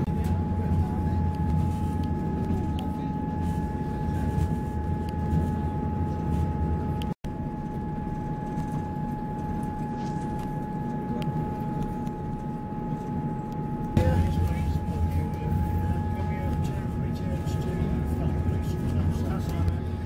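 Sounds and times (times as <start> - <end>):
high-pitched whine: 0.0 - 20.0
train rumbling: 14.0 - 20.0.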